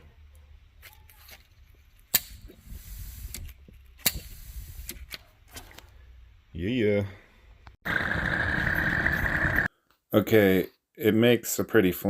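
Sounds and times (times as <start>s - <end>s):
faint hiss: 2.5s - 5.1s.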